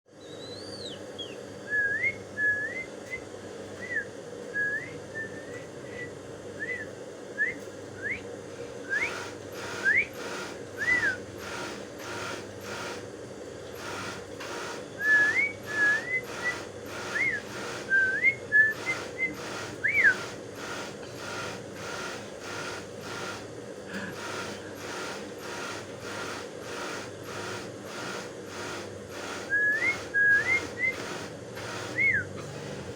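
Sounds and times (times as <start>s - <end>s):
bird whistling: 0.2s - 3.2s, 8.9s - 9.2s, 9.8s - 10.2s, 10.8s - 11.2s, 15.0s - 20.2s, 29.5s - 31.1s, 31.9s - 32.3s.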